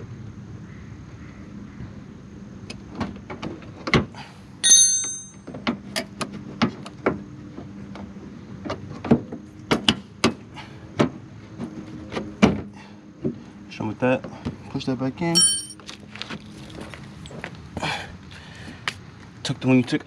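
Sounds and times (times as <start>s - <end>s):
ringing metallic clink: 4.6s - 5.5s, 15.4s - 15.8s.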